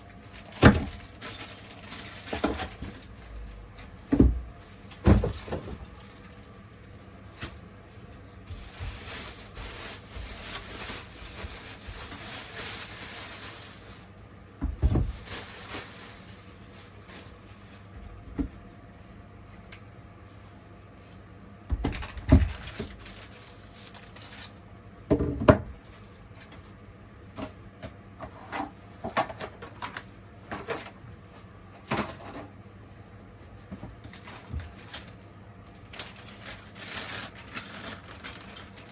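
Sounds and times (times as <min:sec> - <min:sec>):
packaging rustling: 0:00.2 - 0:03.7, 0:08.5 - 0:14.2, 0:15.0 - 0:17.4, 0:21.9 - 0:24.5, 0:34.1 - 0:38.9.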